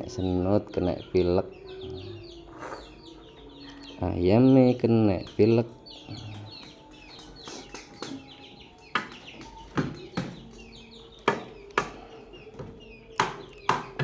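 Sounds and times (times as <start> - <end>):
faint small birds chirping: 0.0 - 14.0
sharp taps or knocks: 8.9 - 10.6.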